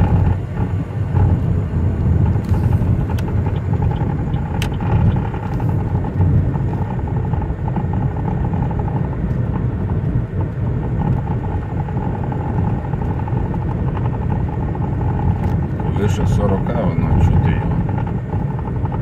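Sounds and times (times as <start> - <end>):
fluttering hum: 0.0 - 19.0
road and tyre rumble: 0.0 - 19.0.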